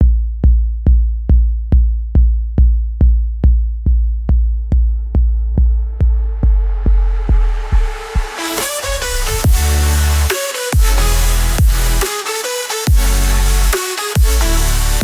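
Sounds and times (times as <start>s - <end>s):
deep booming kick drum: 0.0s - 8.4s, 9.2s - 10.0s, 10.8s - 12.0s, 12.9s - 13.2s, 14.2s - 14.4s
hissing synth riser: 7.5s - 13.3s.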